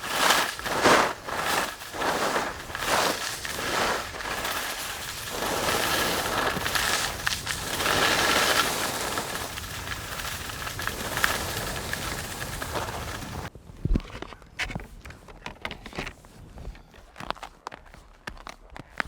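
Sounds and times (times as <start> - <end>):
skis scraping over snow: 0.0 - 13.5.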